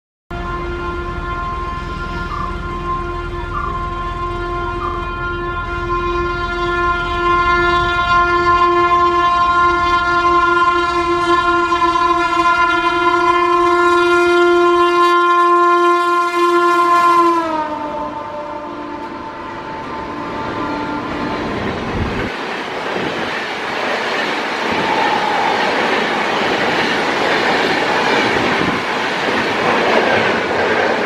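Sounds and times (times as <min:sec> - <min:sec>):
locomotive horn blast: 0:00.3 - 0:22.4.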